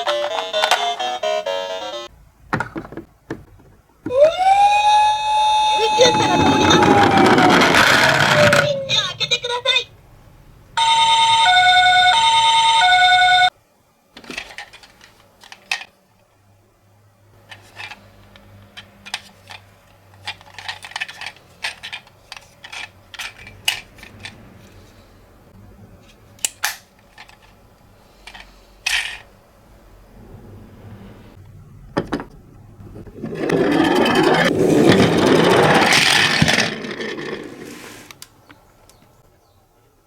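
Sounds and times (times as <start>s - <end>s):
toy siren hi-lo: 4.1s - 8.6s, 10.8s - 13.5s.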